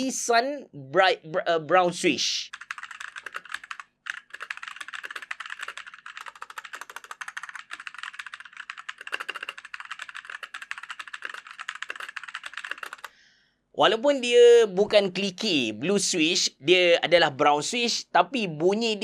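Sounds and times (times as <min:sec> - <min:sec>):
fast mechanical keyboard typing: 0:02.5 - 0:13.1.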